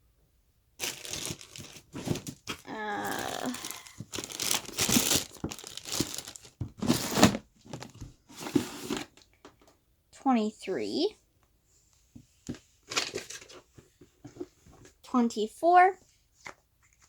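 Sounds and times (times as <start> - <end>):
plastic crinkling and rustling: 0.8 - 9.6.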